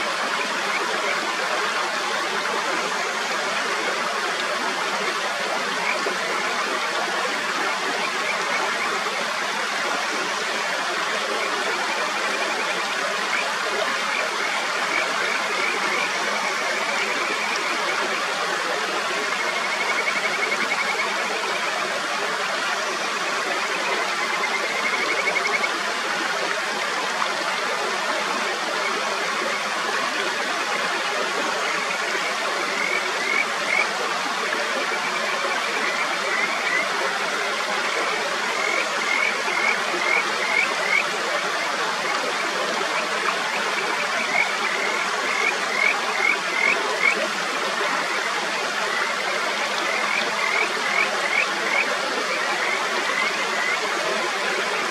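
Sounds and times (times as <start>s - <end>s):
stream rushing over rocks: 0.0s - 54.9s
frogs calling in whistled notes: 19.2s - 21.1s, 32.6s - 33.9s, 38.6s - 41.1s, 49.8s - 53.9s.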